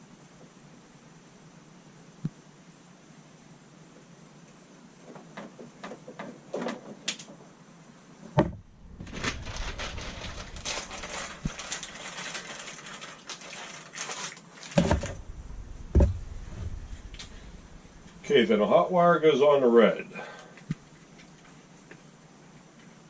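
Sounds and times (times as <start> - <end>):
rustling of wires: 8.4 - 18.6
sharp knock: 14.8 - 18.2.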